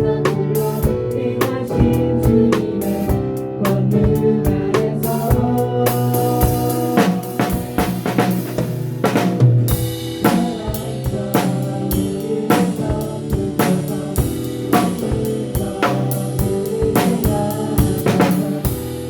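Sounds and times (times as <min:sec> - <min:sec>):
worship band playing: 0:00.0 - 0:19.0
snare and kick drum strokes: 0:04.8 - 0:11.7.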